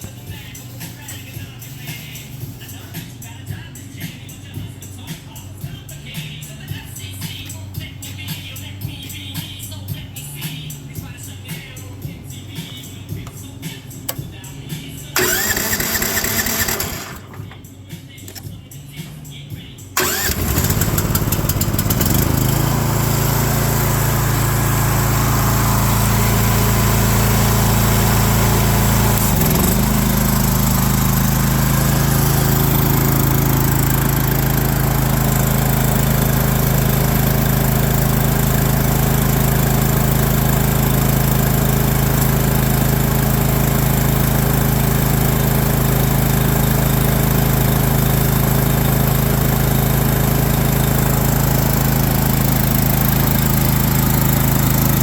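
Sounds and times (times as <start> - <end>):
small gas engine running: 15.2 - 17.5, 20.0 - 55.0.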